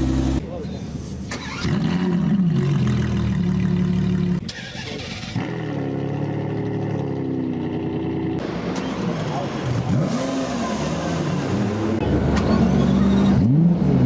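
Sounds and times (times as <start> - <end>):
car engine starting and idling: 0.0 - 10.0.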